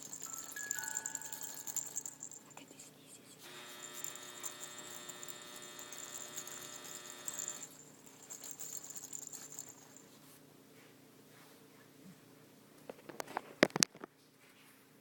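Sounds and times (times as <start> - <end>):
faint crackle: 12.9 - 14.1.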